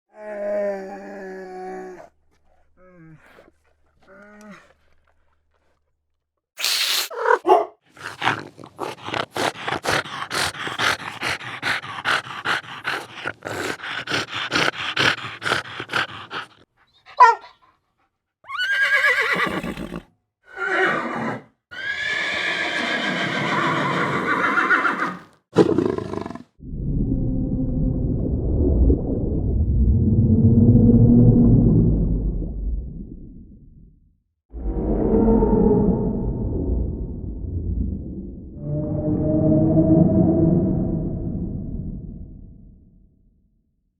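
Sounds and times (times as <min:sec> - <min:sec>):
horse whinnying: 0:18.5 - 0:25.3
low rumbling roar: 0:26.6 - 0:33.9, 0:34.6 - 0:42.8.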